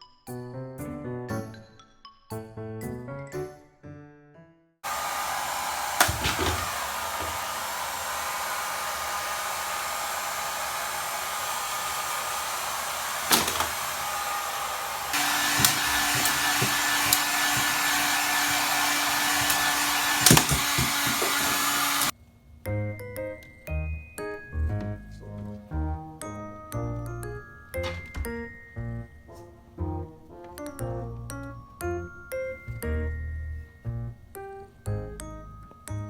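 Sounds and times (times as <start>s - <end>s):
hair dryer running: 4.8s - 22.1s
sharp knocks: 15.1s - 22.1s.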